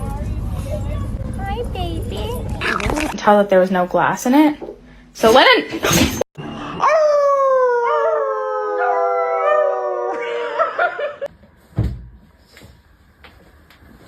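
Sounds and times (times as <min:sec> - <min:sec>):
dog howling: 0:06.6 - 0:11.0.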